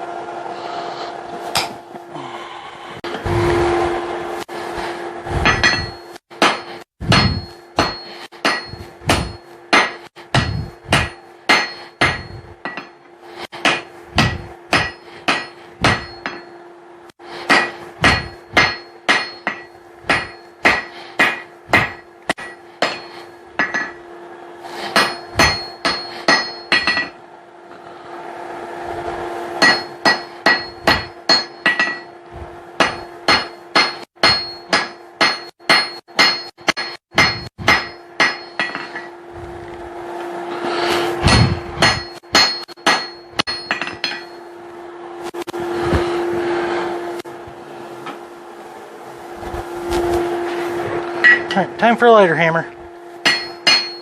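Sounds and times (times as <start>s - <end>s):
steady low hum: 0.0s - 54.0s
hammer striking steel on anvil: 1.5s - 1.9s, 5.4s - 16.6s, 17.3s - 24.1s, 24.8s - 27.2s, 29.6s - 39.3s, 41.0s - 44.6s, 51.1s - 51.9s, 53.2s - 54.0s.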